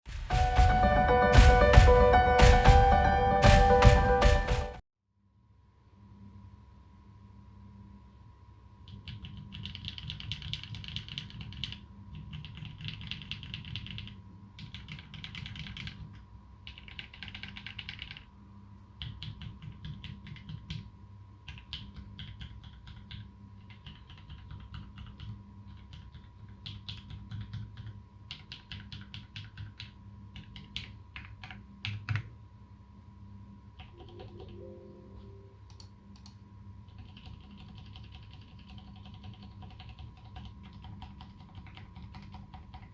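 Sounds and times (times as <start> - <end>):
mechanical keyboard typing: 8.8 - 18.3, 19.0 - 20.9, 21.5 - 32.3, 33.8 - 34.7, 35.7 - 42.9.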